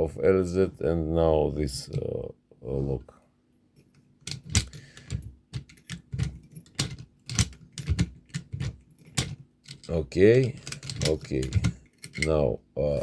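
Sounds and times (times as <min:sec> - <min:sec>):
metal lock and keys clicking: 0:04.2 - 0:12.4.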